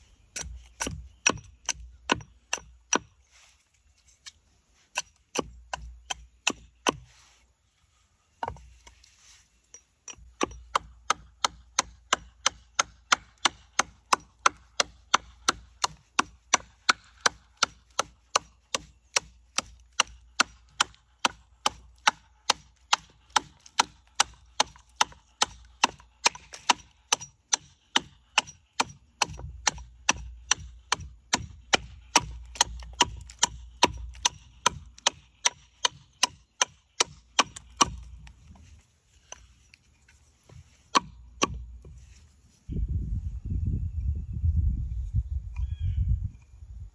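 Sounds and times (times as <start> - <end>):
axe chopping wood: 0.3 - 3.1, 4.9 - 7.1, 10.1 - 39.5, 40.5 - 42.0.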